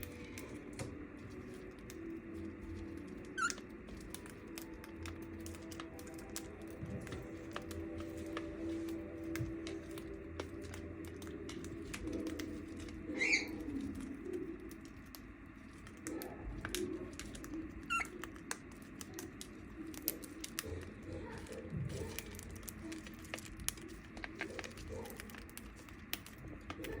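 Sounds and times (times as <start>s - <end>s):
soft warbling chatter: 0.0s - 27.0s
cockatiel chirps: 3.3s - 3.6s, 13.1s - 13.7s, 17.8s - 18.2s.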